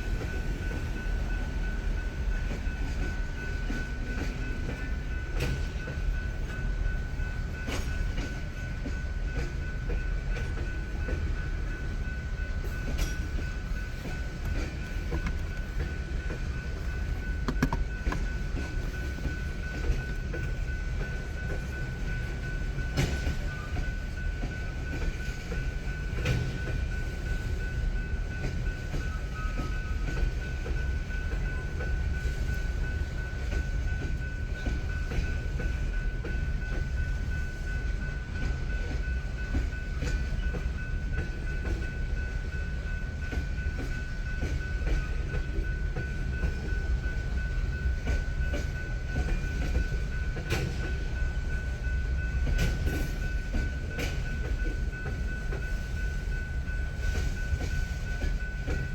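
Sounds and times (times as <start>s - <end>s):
freight train rumbling: 0.0s - 58.9s
wheel clicks over rail joints: 17.4s - 18.3s.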